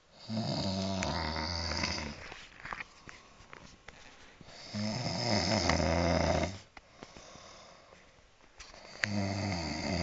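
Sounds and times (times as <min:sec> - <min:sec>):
person snoring: 0:00.1 - 0:02.2, 0:04.5 - 0:07.8, 0:08.8 - 0:10.0.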